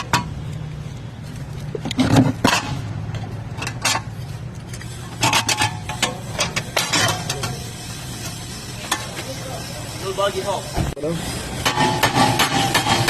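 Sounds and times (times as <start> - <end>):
sharp knocks and clatters: 11.6 - 13.0.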